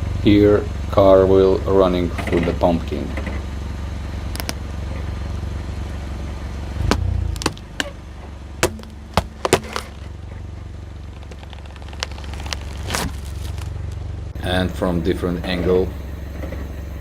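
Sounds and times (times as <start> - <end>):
low engine hum: 0.0 - 17.0
pumpkin shell cracking under tyre: 4.2 - 4.7, 6.8 - 8.0, 8.6 - 10.2, 11.0 - 14.1.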